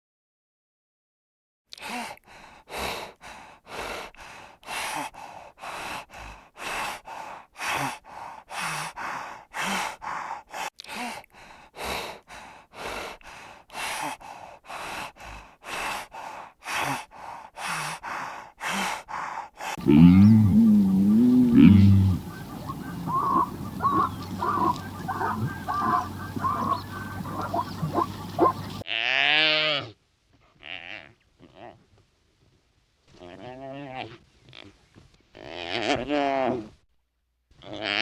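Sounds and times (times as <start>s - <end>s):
animal breathing heavily: 1.8s - 28.8s.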